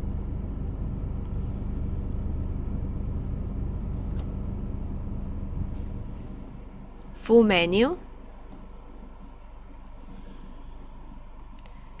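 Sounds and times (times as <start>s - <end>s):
car engine idling: 0.0s - 7.1s.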